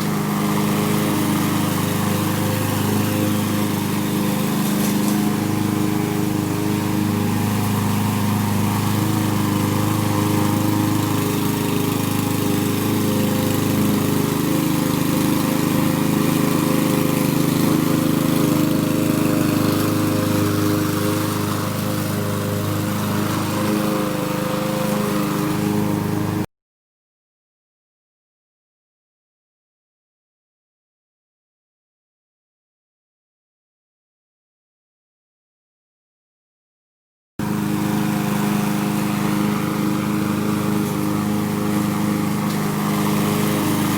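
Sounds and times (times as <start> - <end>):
lawn mower cutting grass: 0.0 - 26.5, 37.4 - 43.9.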